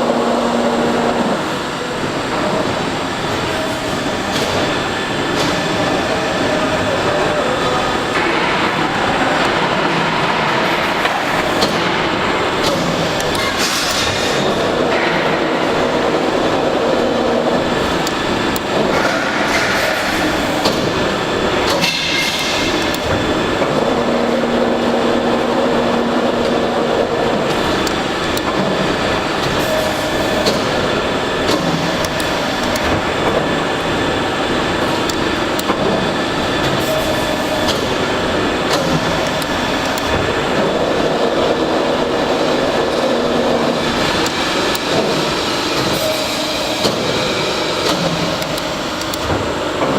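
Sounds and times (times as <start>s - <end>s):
clicks and clanks: 21.6s - 23.3s.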